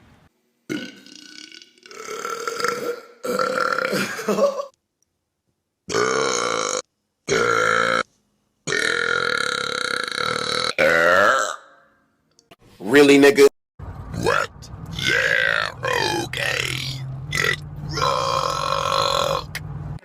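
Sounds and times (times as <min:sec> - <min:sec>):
person burping: 0:00.7 - 0:04.7, 0:05.9 - 0:08.1, 0:08.7 - 0:11.7, 0:17.4 - 0:19.6.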